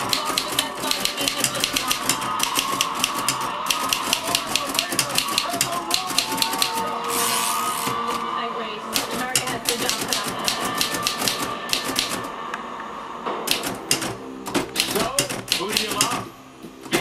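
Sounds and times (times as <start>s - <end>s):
typewriter keystroke clicks: 0.0s - 6.8s, 9.0s - 12.2s, 13.5s - 14.2s, 14.8s - 16.2s.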